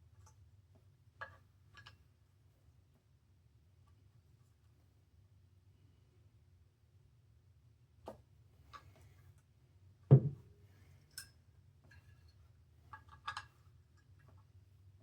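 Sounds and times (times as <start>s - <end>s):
loud knock: 10.1s - 10.4s.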